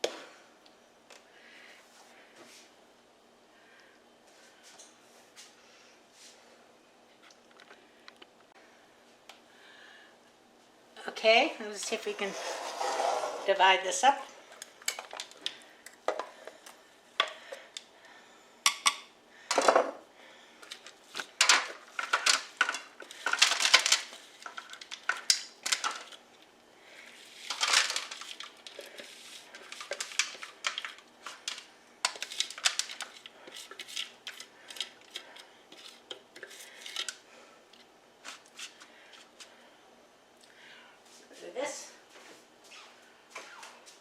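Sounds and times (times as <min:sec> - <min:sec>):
utensil scraping a bowl: 0:12.0 - 0:13.6.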